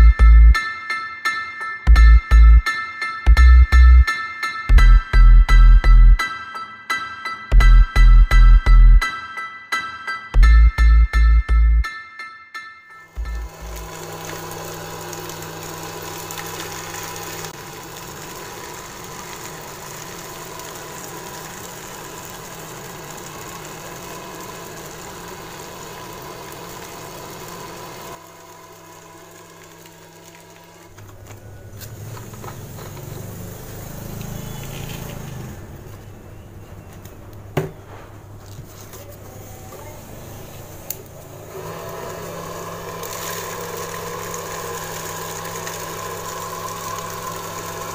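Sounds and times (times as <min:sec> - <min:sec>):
small motor humming and whining: 0:13.2 - 0:36.0, 0:39.0 - 0:47.9.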